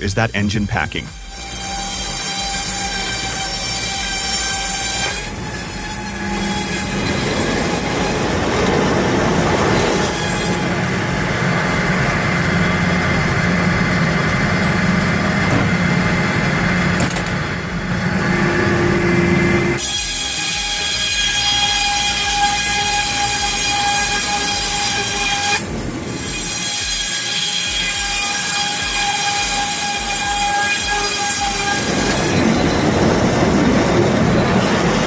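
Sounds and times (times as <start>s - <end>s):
circular saw cutting logs: 1.2s - 35.0s
engine hum: 3.1s - 20.4s.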